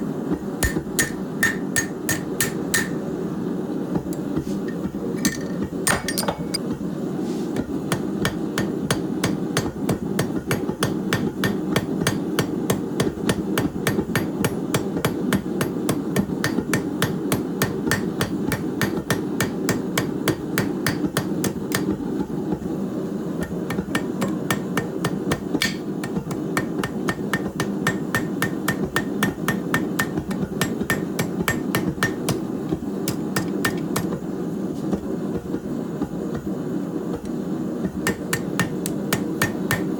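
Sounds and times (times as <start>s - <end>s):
hammer striking steel on anvil: 0.6s - 3.0s, 4.6s - 6.6s, 7.9s - 22.0s, 23.4s - 34.2s, 37.8s - 39.9s.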